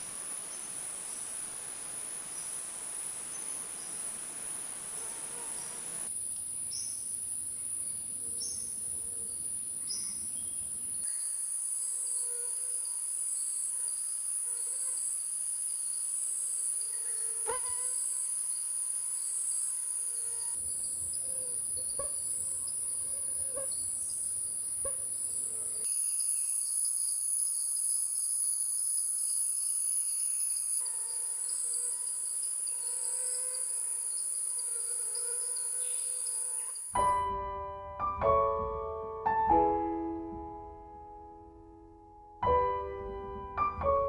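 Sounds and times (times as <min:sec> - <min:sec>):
high-pitched insect chorus: 0:00.0 - 0:37.1
slow piano music: 0:37.0 - 0:44.0.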